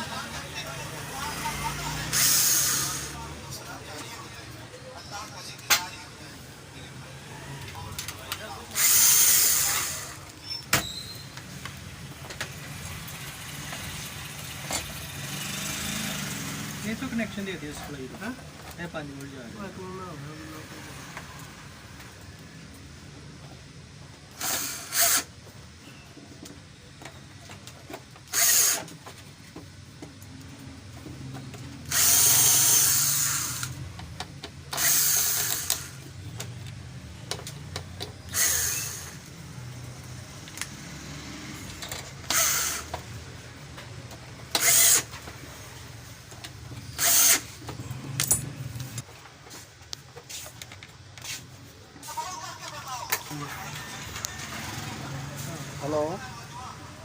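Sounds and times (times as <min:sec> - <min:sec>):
hand-held power tool bursts: 0:02.1 - 0:03.2, 0:08.7 - 0:11.4, 0:24.3 - 0:25.3, 0:28.2 - 0:28.9, 0:31.8 - 0:33.8, 0:34.7 - 0:36.0, 0:38.2 - 0:39.3, 0:41.8 - 0:43.1, 0:44.5 - 0:45.2, 0:46.8 - 0:47.6.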